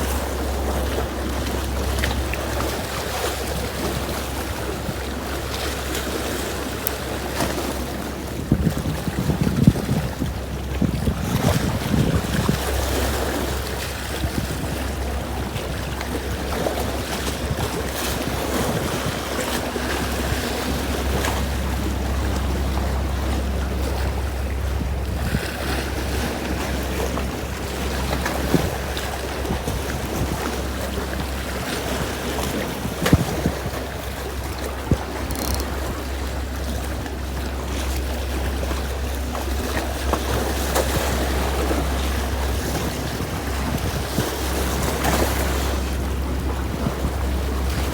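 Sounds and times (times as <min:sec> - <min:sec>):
steady low drone: 0:00.0 - 0:47.9
waves washing: 0:00.0 - 0:47.9
wind buffeting microphone: 0:00.0 - 0:47.9
faint clicks: 0:35.2 - 0:35.8.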